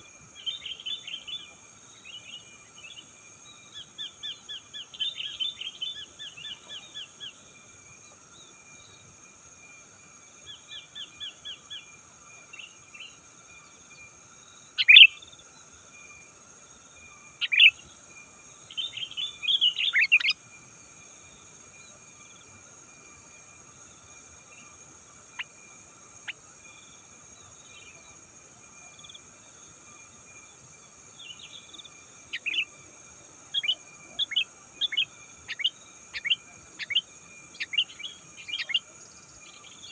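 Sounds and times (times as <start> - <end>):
bird chirping: 14.8 - 15.2, 17.4 - 17.9, 18.7 - 20.4, 31.2 - 32.7, 33.5 - 39.9.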